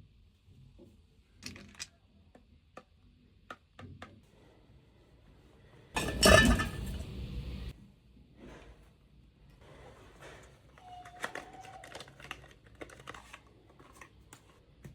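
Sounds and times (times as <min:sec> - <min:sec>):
household objects clinking: 0:06.0 - 0:07.2.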